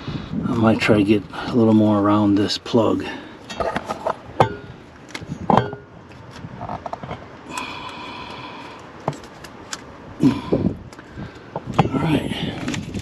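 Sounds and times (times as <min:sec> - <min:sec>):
crinkling handling noises: 0:00.8 - 0:13.0.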